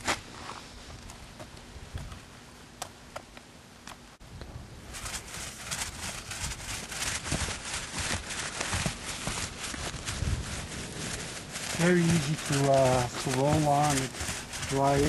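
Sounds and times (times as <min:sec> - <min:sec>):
paint roller wet rasp on shingles: 0:04.9 - 0:15.0.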